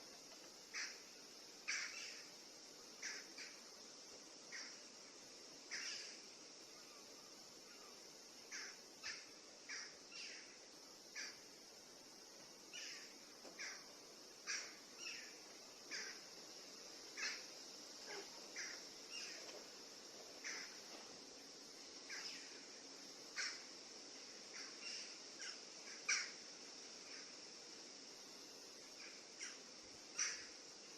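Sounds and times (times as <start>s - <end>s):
high insect drone: 0.0s - 30.9s
birds calling: 0.1s - 2.3s, 5.7s - 11.5s, 12.7s - 21.0s, 22.0s - 22.6s, 29.0s - 30.5s.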